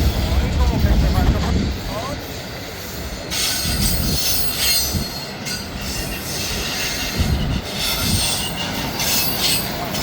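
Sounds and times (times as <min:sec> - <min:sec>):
train wheels rolling on rail: 0:00.0 - 0:10.0.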